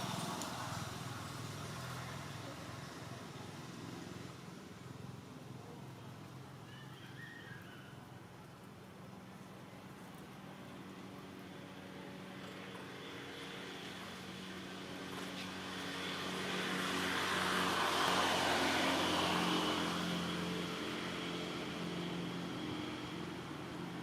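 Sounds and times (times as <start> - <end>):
vehicle driving past: 12.8 - 23.9.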